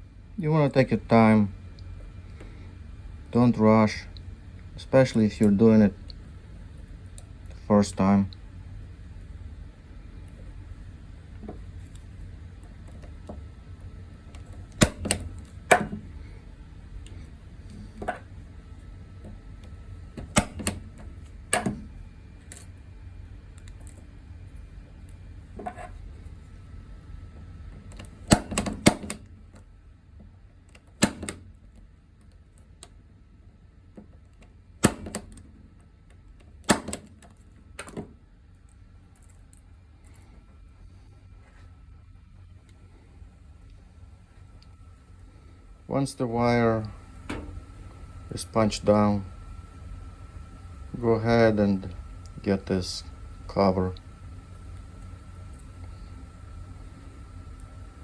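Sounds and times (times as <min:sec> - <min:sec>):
punch-down tool clicks: 0:20.2 - 0:20.8, 0:27.9 - 0:29.3.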